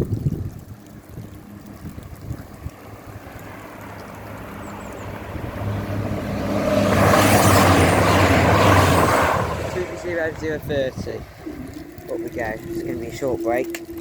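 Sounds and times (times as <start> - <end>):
train approaching: 3.5 - 14.0
steady low hum: 9.6 - 14.0.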